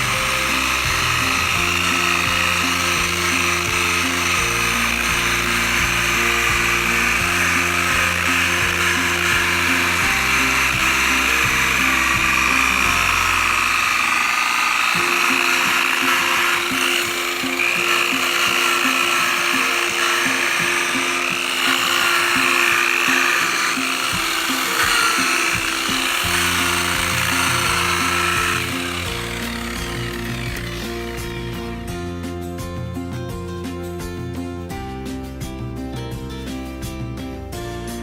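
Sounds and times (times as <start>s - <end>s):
whining rotary power tool: 0.0s - 32.0s
background music with steady beat: 0.0s - 38.0s.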